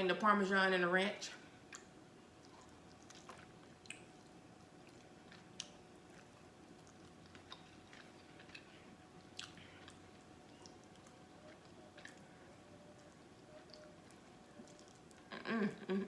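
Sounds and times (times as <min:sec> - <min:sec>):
chewing food: 0:01.6 - 0:15.9
mouth clicks and smacks: 0:02.5 - 0:04.1.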